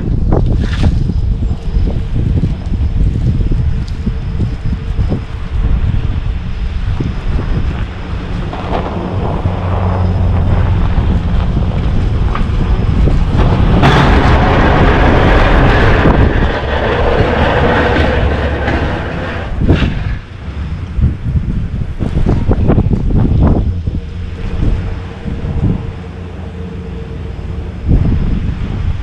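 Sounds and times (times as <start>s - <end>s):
loud rushing surge: 0.0s - 29.0s
vehicle engine under load: 0.0s - 29.0s
wind buffeting microphone: 0.0s - 29.0s.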